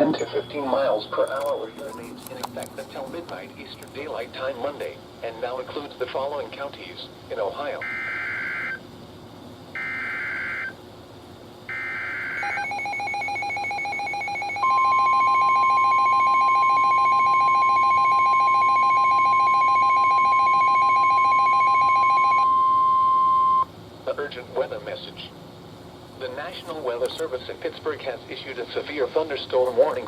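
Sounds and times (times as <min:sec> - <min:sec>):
whooping alarm horn: 0:09.8 - 0:10.7, 0:11.7 - 0:23.6.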